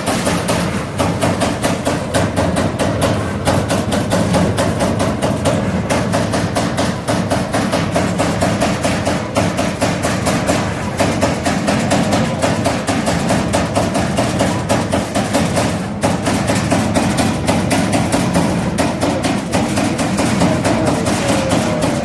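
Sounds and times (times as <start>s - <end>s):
punch press punching sheet metal: 0.0s - 22.0s.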